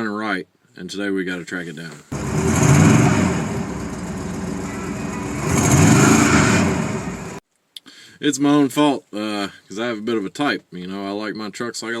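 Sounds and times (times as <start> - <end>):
truck engine revving: 2.2 - 7.4.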